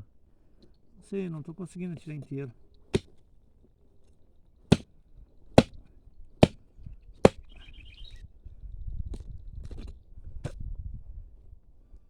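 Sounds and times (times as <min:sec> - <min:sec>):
scraping handling noise: 0:01.7 - 0:04.2
digging tool striking soil: 0:02.0 - 0:03.2, 0:04.7 - 0:04.9, 0:05.6 - 0:05.8, 0:06.4 - 0:06.6, 0:07.2 - 0:07.4.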